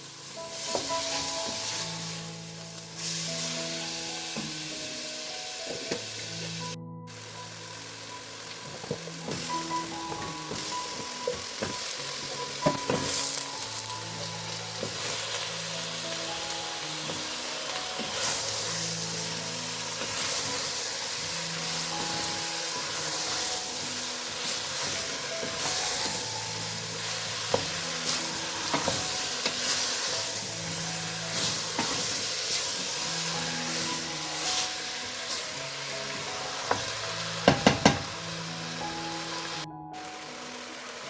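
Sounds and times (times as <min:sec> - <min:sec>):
food sizzling in a pan: 0:00.0 - 0:41.0
soft background music: 0:00.0 - 0:41.0
utensil knocking against pot: 0:37.4 - 0:38.0.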